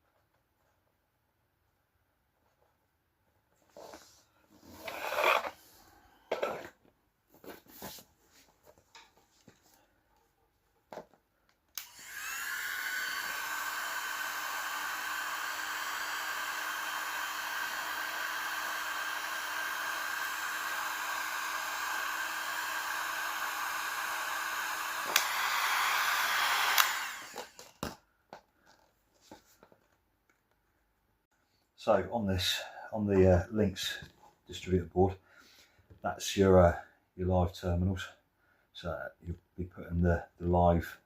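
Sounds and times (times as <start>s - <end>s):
heat gun fan whining: 11.7s - 27.8s
heat gun switch click: 25.1s - 25.4s, 26.6s - 27.1s.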